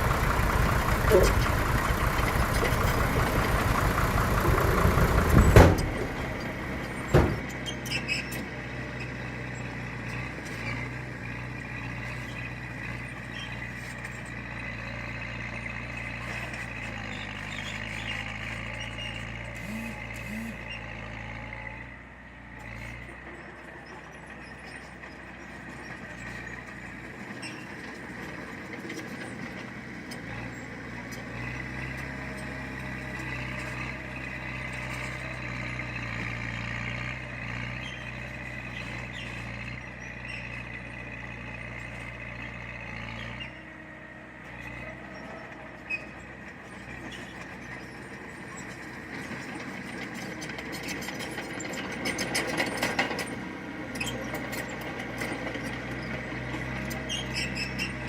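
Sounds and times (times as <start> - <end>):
diesel machinery engine drone: 0.0 - 58.0
clattering and knocking: 0.9 - 6.4.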